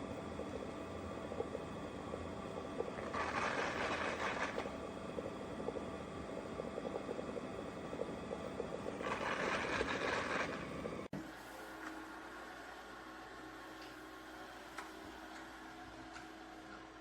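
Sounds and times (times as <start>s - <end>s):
quiet hum: 0.0s - 17.0s
robot vacuum motor whir: 9.0s - 10.8s.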